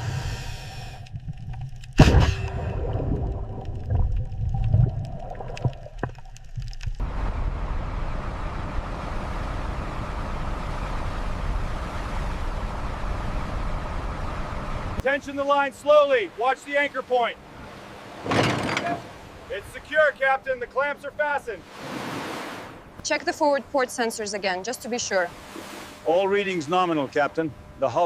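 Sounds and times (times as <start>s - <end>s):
low rumbling: 0.0s - 15.0s.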